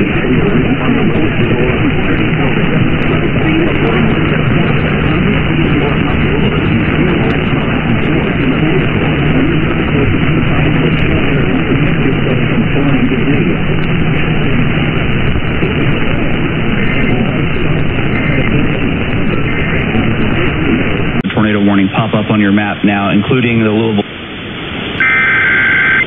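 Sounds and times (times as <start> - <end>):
faint low hum: 0.0 - 26.0
radio static hiss: 0.0 - 26.0.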